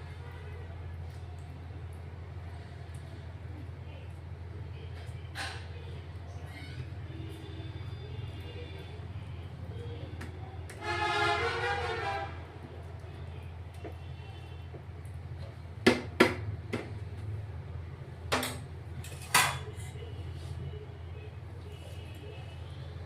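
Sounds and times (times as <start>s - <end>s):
horn-like tone: 10.8s - 12.5s.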